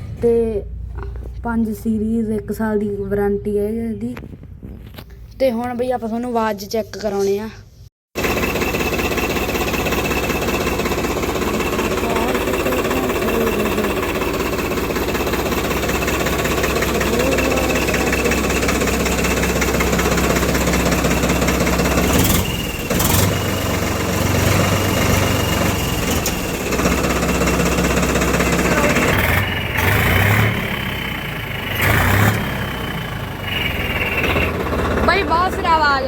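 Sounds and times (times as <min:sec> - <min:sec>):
engine running: 0:08.2 - 0:36.0
exhaust whistle tone: 0:32.9 - 0:34.6.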